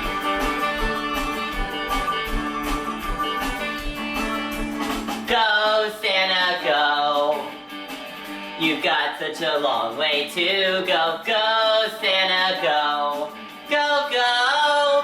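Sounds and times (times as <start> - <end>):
sliding lead line: 0.0 - 5.4
steady beat: 0.0 - 5.4
strummed guitar: 0.0 - 15.0.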